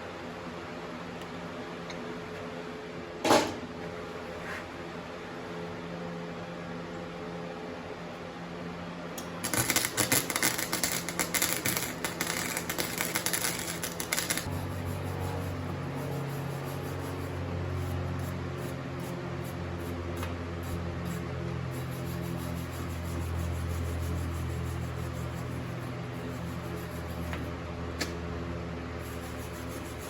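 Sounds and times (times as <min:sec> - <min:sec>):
steady low hum: 0:00.0 - 0:30.0
arc welder crackling: 0:09.2 - 0:15.4.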